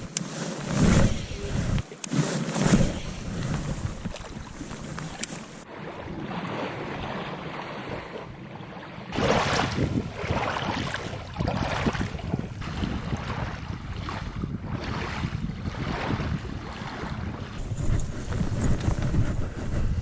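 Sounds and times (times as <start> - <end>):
wind buffeting microphone: 0.0 - 1.9, 2.6 - 8.5, 9.1 - 20.0.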